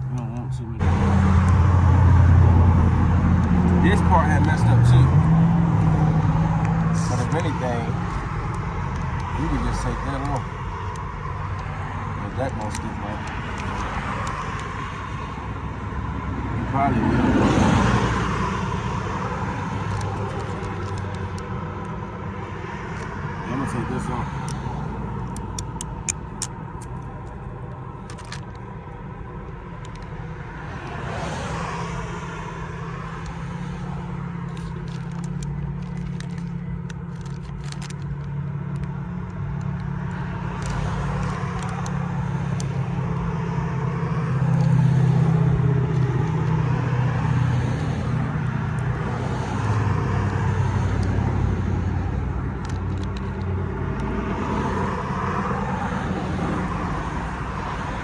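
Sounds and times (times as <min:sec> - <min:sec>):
vehicle engine rumble: 0:00.0 - 0:58.0
light crackles and clicks: 0:34.5 - 0:42.8.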